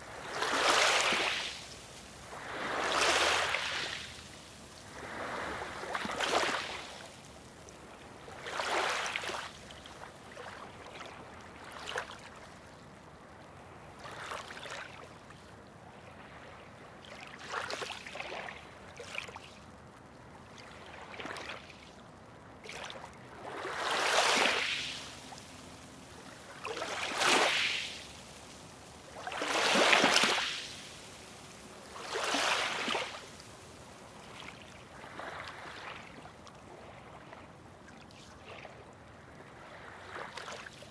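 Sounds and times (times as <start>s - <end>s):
waves washing onto shore: 0.0s - 10.8s, 22.7s - 37.6s.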